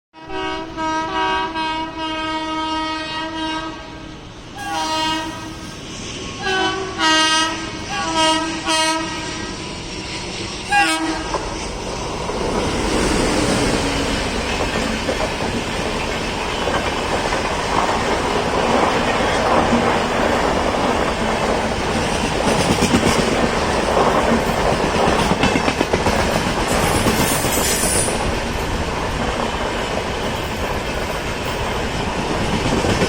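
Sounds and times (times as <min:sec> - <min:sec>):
locomotive horn honking: 0:00.2 - 0:05.6, 0:06.4 - 0:09.6, 0:10.7 - 0:11.4
train wheels clattering on rails: 0:09.7 - 0:33.0.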